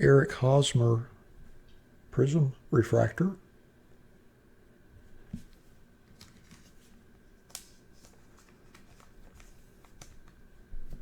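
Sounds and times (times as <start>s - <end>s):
cards clicking and sliding: 6.1s - 10.4s.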